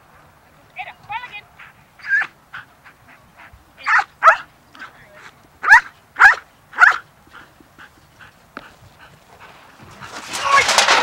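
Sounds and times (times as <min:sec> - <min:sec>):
faint short barks and yips: 0:02.0 - 0:02.3, 0:03.8 - 0:04.5, 0:05.6 - 0:07.0
dog barking: 0:03.8 - 0:04.5, 0:05.6 - 0:07.0.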